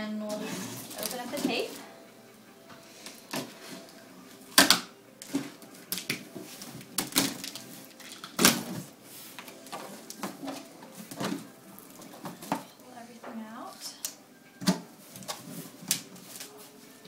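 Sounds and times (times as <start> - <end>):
packing tape tearing: 0.4 - 1.8, 3.0 - 12.7, 14.0 - 16.5.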